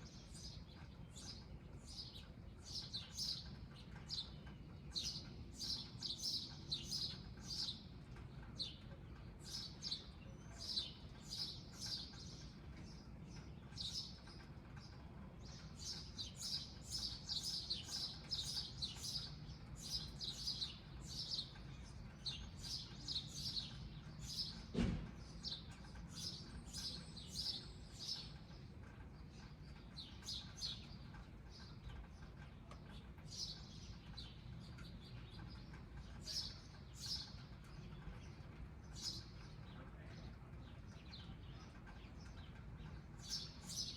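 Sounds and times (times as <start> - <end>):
small birds chirping: 0.0 - 43.9
sharp knock: 24.7 - 25.0.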